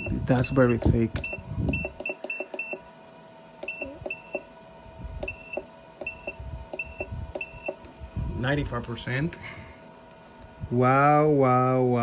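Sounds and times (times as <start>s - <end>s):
spot welder beeping: 0.0s - 2.9s, 3.6s - 4.6s, 5.2s - 7.9s.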